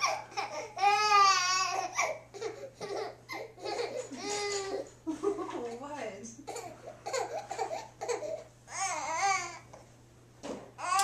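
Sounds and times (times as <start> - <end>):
baby laughing and squealing: 0.0 - 4.9.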